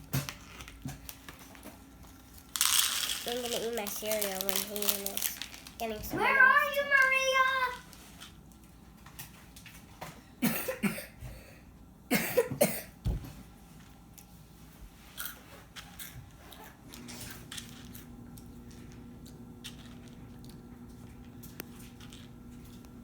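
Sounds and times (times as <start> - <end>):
rustling: 0.4 - 8.4
child coughing: 10.4 - 13.0.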